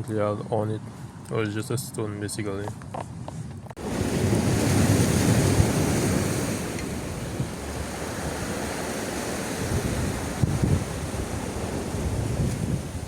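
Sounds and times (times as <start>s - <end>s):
wind buffeting microphone: 2.6s - 13.0s
sea surf washing on shore: 3.8s - 13.0s.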